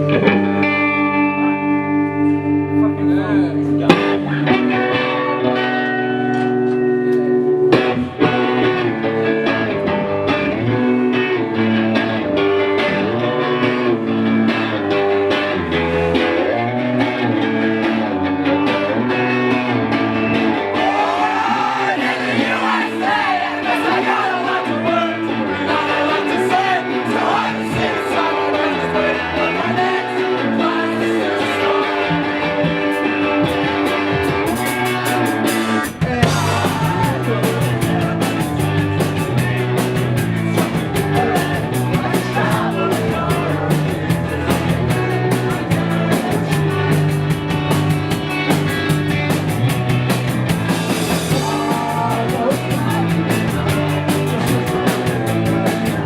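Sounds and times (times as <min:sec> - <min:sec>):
bass: 0:00.0 - 0:56.0
drums: 0:00.0 - 0:56.0
guitar: 0:00.0 - 0:56.0
rock band playing: 0:00.0 - 0:56.0
person singing: 0:35.4 - 0:47.8, 0:51.3 - 0:56.0.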